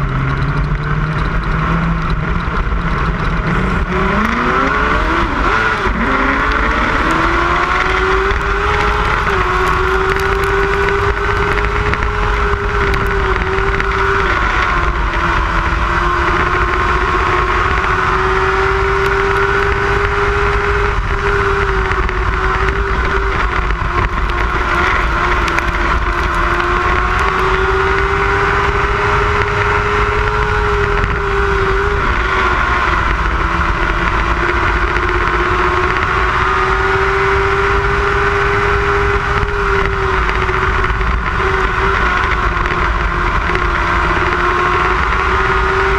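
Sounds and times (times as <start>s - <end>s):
race car engine at high revs: 0.0s - 45.9s.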